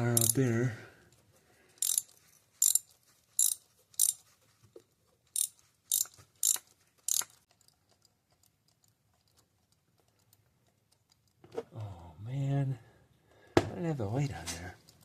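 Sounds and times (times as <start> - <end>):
socket ratchet clicking: 0.1 - 0.4, 1.8 - 4.2, 5.4 - 7.4.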